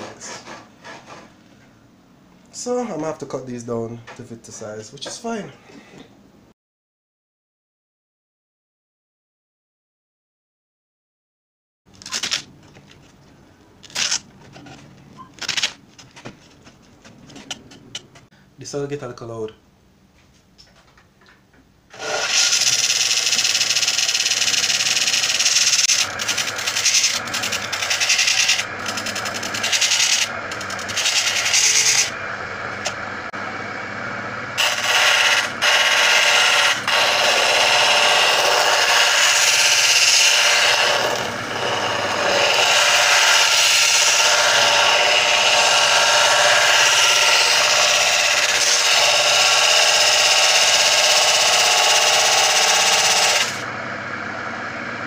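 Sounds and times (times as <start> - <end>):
power tool grinding: 21.9 - 53.7.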